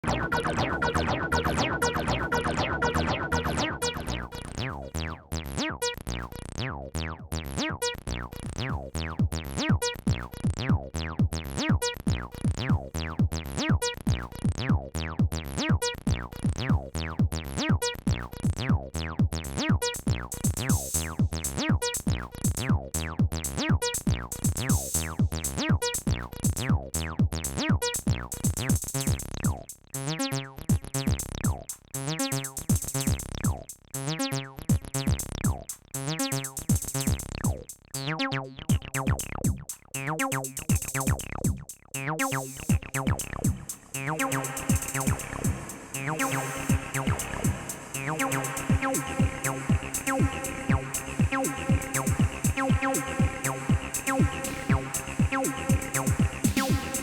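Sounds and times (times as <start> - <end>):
drum machine beat: 0.0 - 4.6, 15.2 - 29.7, 30.7 - 31.8, 32.4 - 33.8, 34.7 - 37.9, 38.7 - 57.0
synth bass line: 0.0 - 5.2, 42.2 - 57.0.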